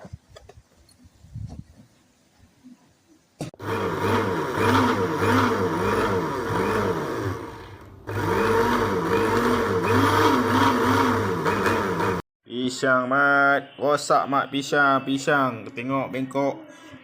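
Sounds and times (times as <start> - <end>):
blender motor running: 3.6 - 12.2.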